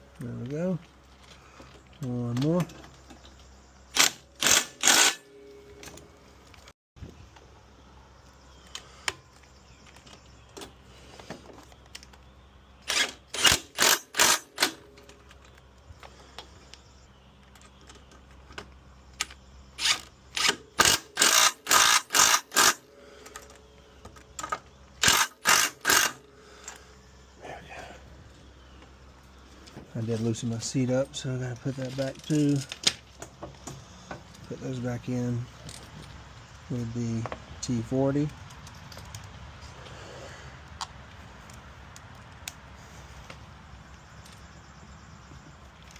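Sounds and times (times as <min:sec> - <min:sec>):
impact driver bursts: 0:03.9 - 0:05.2, 0:12.8 - 0:14.8, 0:19.8 - 0:22.8, 0:25.0 - 0:26.2.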